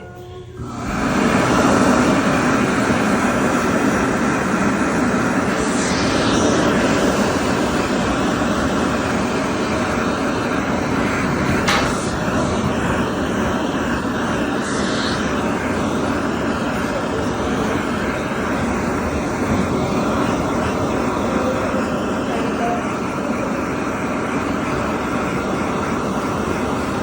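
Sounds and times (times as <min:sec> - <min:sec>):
hand dryer blowing: 0:00.0 - 0:21.6
short sharp sound: 0:11.4 - 0:13.2.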